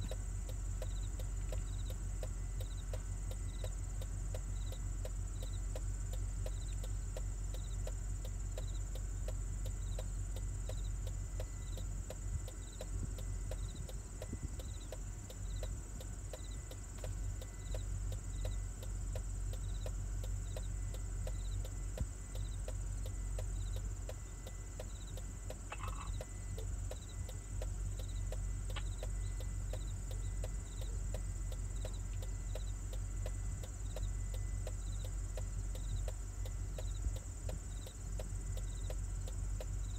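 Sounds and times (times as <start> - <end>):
higher insect call: 0.0 - 39.9
insect chirping: 0.0 - 39.9
high-pitched insect buzz: 21.3 - 36.1.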